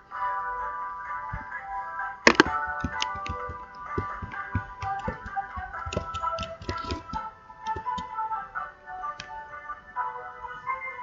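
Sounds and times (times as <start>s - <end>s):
calm instrumental music: 0.0s - 11.0s.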